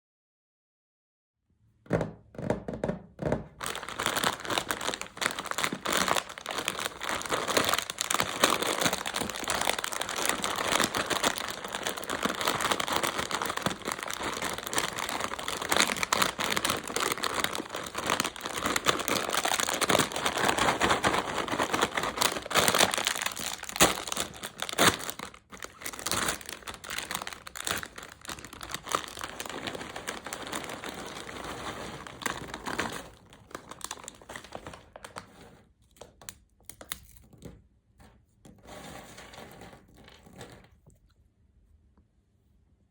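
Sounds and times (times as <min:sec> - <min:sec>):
plastic snack bags crinkling: 0:03.6 - 0:37.4.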